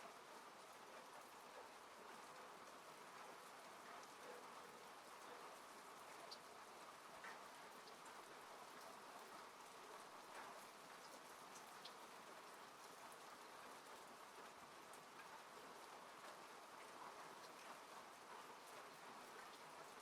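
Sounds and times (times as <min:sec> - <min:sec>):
rain hissing on a car: 0:00.0 - 0:20.0.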